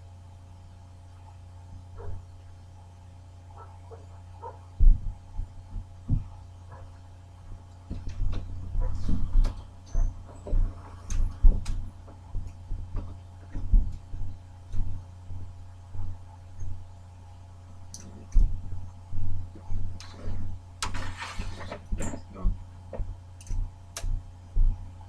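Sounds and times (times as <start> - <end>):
steady low hum: 0.0 - 25.0
dull thumps and knocks: 4.8 - 6.4.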